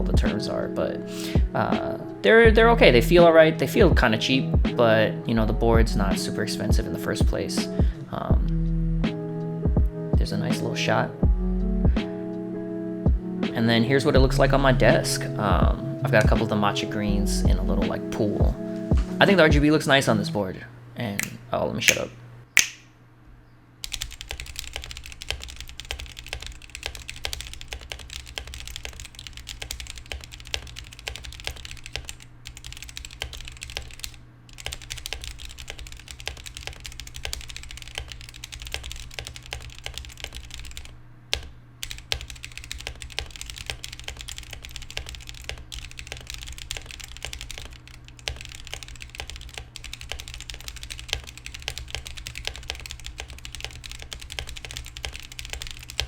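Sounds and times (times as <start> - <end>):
mechanical keyboard typing: 23.8 - 56.0.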